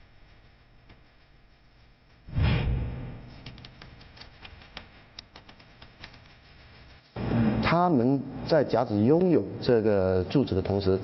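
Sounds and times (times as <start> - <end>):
low boom: 2.3 - 3.6.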